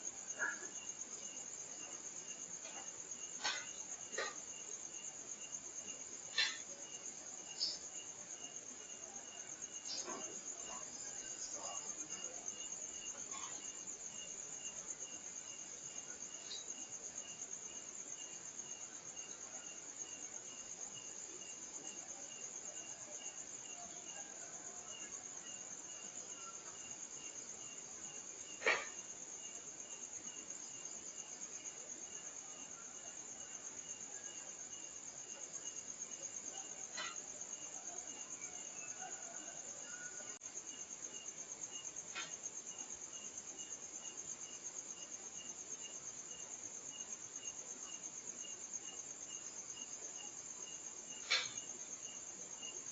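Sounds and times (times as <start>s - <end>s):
crickets trilling: 0.0s - 52.9s
pulsing insect call: 3.2s - 19.7s.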